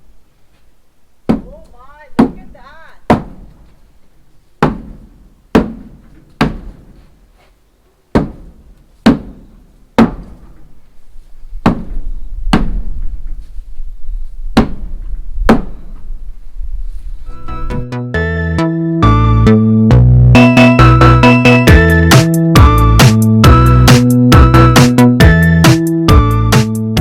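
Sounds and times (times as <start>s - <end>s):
heavy blows on timber: 1.2s - 13.6s, 14.2s - 16.3s.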